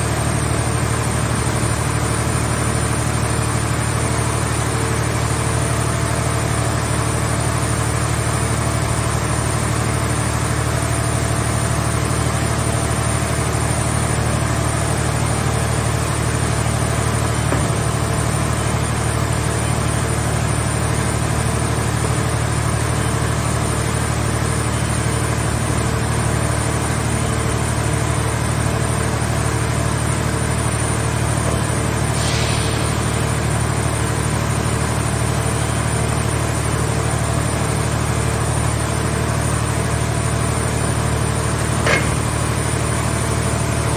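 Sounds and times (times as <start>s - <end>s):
baler machine humming: 13.0s - 20.6s, 39.9s - 43.9s
brief hiss: 32.2s - 33.0s
sharp click: 41.8s - 42.4s.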